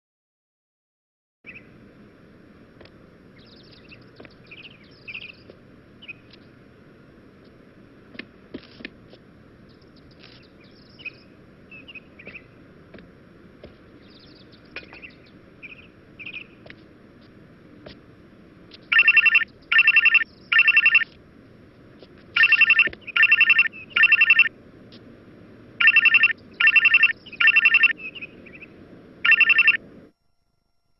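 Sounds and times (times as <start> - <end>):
low hiss: 1.5 - 30.7
faint high chirps: 18.8 - 21.1, 22.4 - 24.5, 25.8 - 29.8
electronic telephone ring: 18.9 - 21.1, 22.4 - 24.5, 25.8 - 28.0, 29.2 - 29.8.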